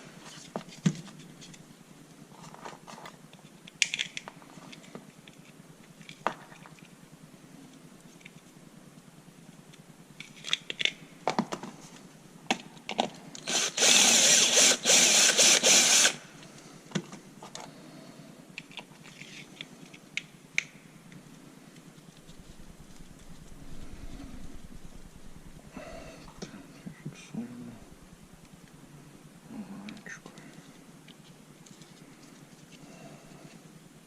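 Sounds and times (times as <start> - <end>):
power drill drilling: 13.4 - 16.2.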